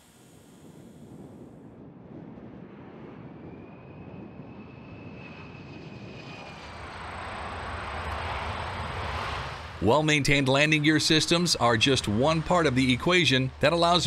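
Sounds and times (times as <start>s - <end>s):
faint whine: 0.0s - 8.1s
aircraft engine rushing: 0.0s - 14.0s.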